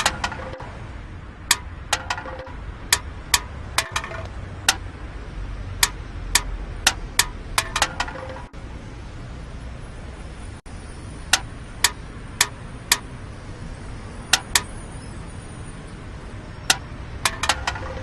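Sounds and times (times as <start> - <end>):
sharp clicks: 0.0 - 0.7, 1.5 - 4.9, 5.8 - 8.5, 11.3 - 13.1, 14.3 - 14.8.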